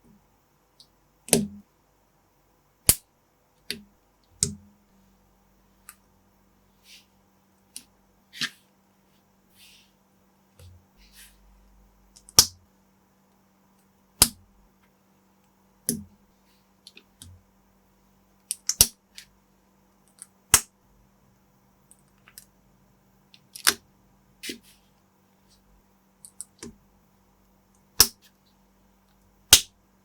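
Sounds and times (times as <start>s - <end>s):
plastic bricks snapping together: 18.5s - 19.0s.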